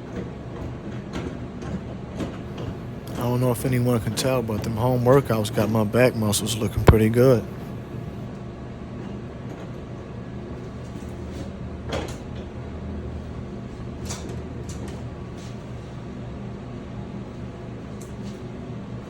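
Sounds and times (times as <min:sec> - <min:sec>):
low mechanical hum: 0:00.0 - 0:08.3.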